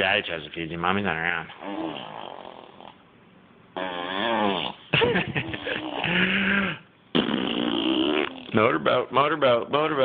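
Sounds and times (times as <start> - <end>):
person making lip trills: 5.6 - 8.6.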